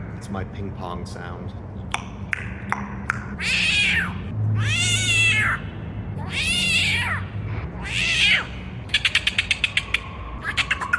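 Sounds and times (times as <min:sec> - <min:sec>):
cat meowing: 0:03.4 - 0:05.6, 0:06.2 - 0:07.2, 0:07.8 - 0:08.5.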